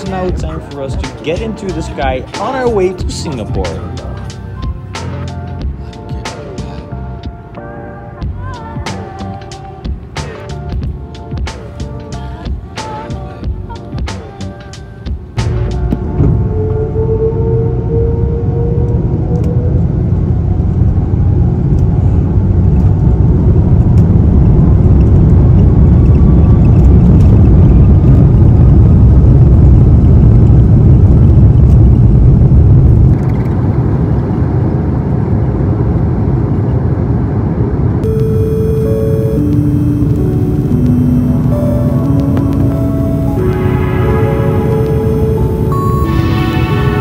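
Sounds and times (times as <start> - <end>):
low rumble of engines and runway: 14.4 - 47.0
jet engine whine: 15.9 - 47.0.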